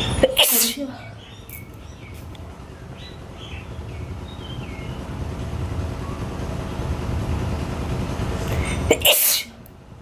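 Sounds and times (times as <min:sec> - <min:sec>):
low outdoor rumble: 0:00.0 - 0:10.0
bird chirping: 0:00.9 - 0:05.2.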